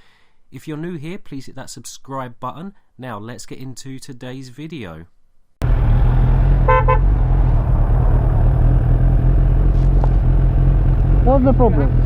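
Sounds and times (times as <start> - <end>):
motorcycle rumble: 5.6 - 12.0
vehicle horn beeps: 6.6 - 7.1.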